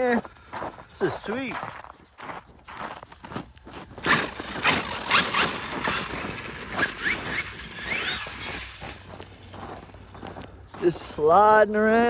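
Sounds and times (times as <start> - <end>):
tyres spinning on frozen ground: 0.1 - 12.0
electric motor whining in bursts: 3.9 - 9.9.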